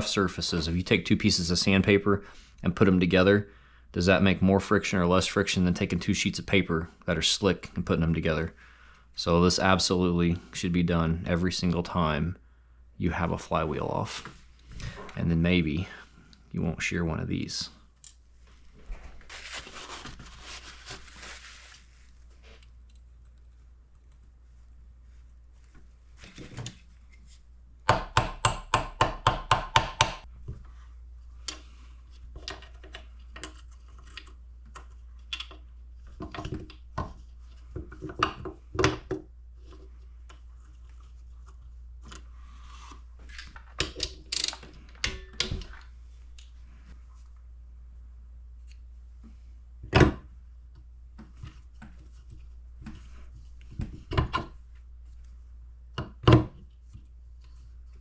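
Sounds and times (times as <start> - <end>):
metal tools clinking and knocking: 43.9 - 45.8.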